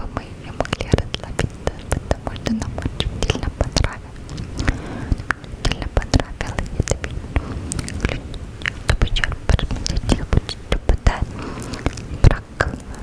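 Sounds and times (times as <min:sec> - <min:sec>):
person whispering: 0:00.0 - 0:04.2, 0:05.6 - 0:06.7
wet mouth clicks: 0:00.6 - 0:13.0.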